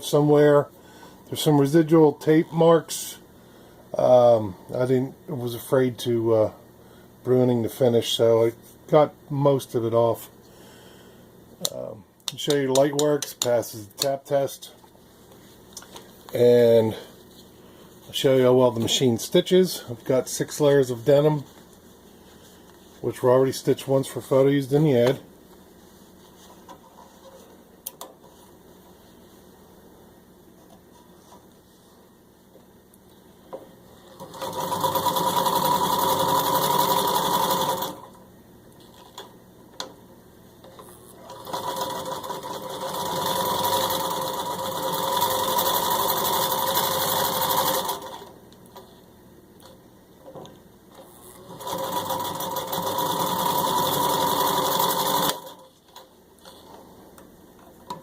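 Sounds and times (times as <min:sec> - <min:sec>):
sewing machine stitching: 0:34.0 - 0:38.2, 0:40.8 - 0:48.3, 0:51.0 - 0:55.7.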